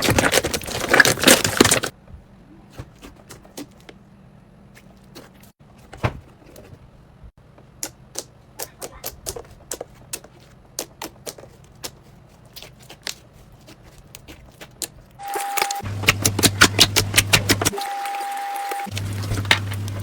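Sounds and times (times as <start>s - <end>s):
slime clicking and crackling: 7.8s - 17.8s.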